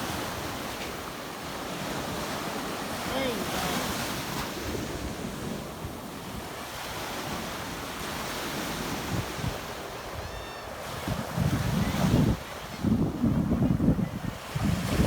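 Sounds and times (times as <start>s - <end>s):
ocean surf washing onto shore: 0.0s - 15.0s
wind buffeting microphone: 8.8s - 15.0s.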